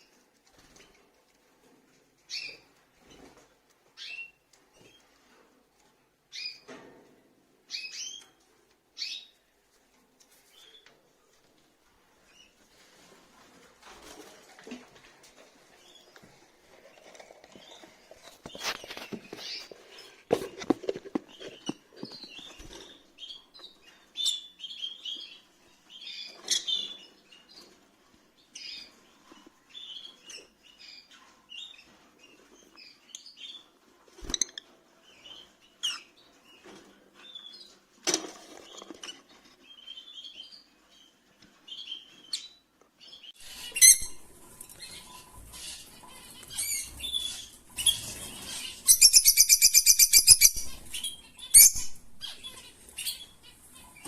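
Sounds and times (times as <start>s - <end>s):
rustling: 9.7s - 23.2s
lovebirds chirping: 39.6s - 54.0s.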